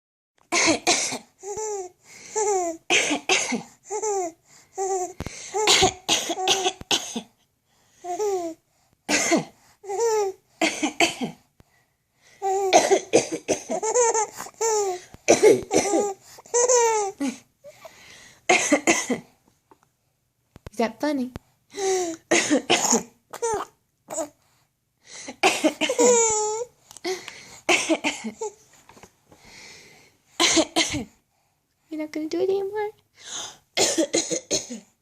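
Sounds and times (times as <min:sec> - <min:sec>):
adult coughing: 0:00.5 - 0:01.3, 0:05.6 - 0:07.3, 0:09.1 - 0:09.6, 0:10.6 - 0:11.4, 0:12.7 - 0:13.9, 0:15.3 - 0:16.2, 0:18.5 - 0:19.3, 0:22.3 - 0:23.1, 0:25.3 - 0:26.4, 0:27.7 - 0:28.5, 0:30.4 - 0:31.1, 0:33.8 - 0:34.9.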